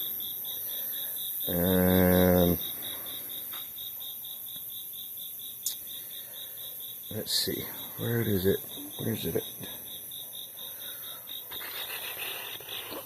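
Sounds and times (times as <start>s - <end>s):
cricket chirping: 0.0s - 13.0s.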